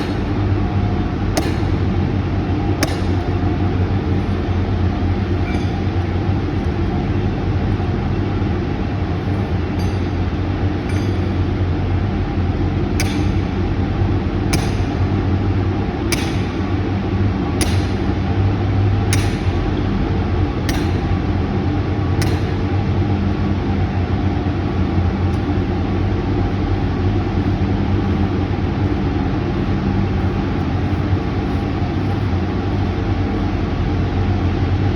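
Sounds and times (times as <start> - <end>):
sledgehammer striking steel pins: 1.4 - 1.9, 2.8 - 3.6, 5.1 - 6.1, 9.8 - 11.6, 13.0 - 13.5, 14.5 - 15.1, 16.1 - 16.6, 17.6 - 18.2, 19.1 - 19.8, 20.6 - 21.3, 22.2 - 22.9.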